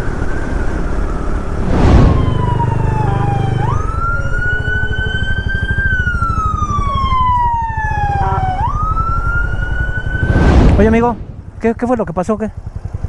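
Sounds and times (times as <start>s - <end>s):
siren wailing: 0.0s - 11.0s
engine idling: 10.9s - 13.0s.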